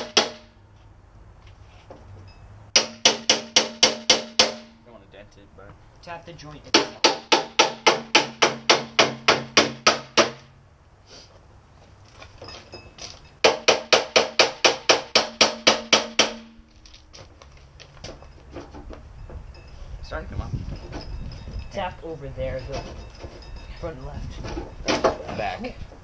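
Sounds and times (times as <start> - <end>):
metal ringing: 20.6 - 25.6.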